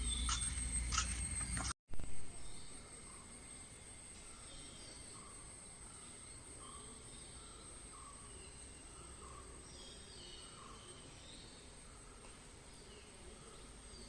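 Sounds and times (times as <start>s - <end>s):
birds calling: 0.0s - 1.7s
insect drone: 0.0s - 1.7s, 2.3s - 14.0s.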